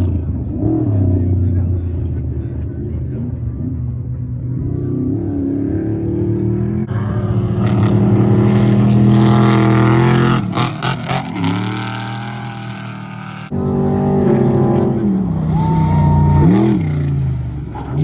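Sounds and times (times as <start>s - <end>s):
truck engine: 0.0s - 18.0s
race truck engine passing: 5.4s - 18.0s.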